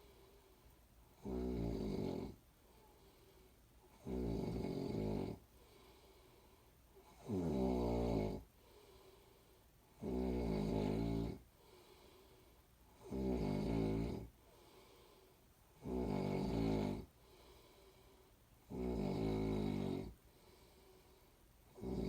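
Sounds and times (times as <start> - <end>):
quiet breathing: 0.0 - 22.0
person snoring: 1.2 - 2.4, 3.9 - 5.9, 7.0 - 8.5, 9.9 - 11.4, 13.0 - 14.3, 15.8 - 17.7, 18.7 - 20.9, 21.7 - 22.0.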